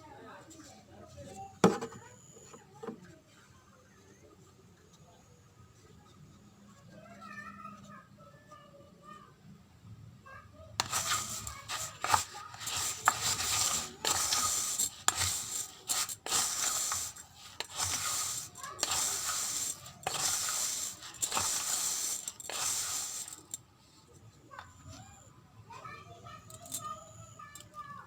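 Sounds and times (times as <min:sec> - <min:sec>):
raw rice crunching: 0:10.8 - 0:23.6.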